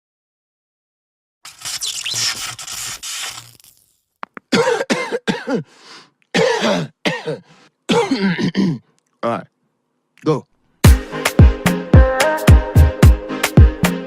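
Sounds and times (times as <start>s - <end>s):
short voiced coughs: 4.5s - 5.7s, 6.4s - 8.9s.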